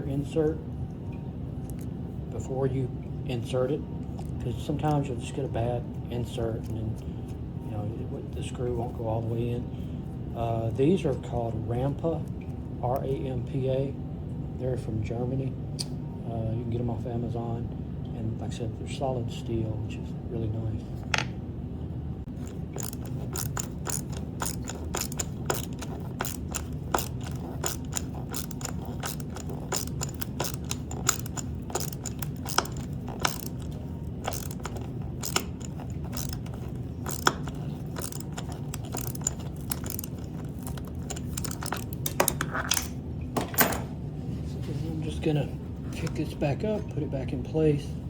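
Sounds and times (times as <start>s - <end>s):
steady low hum: 0.0s - 48.0s
metallic clicks and scraping: 22.3s - 43.8s.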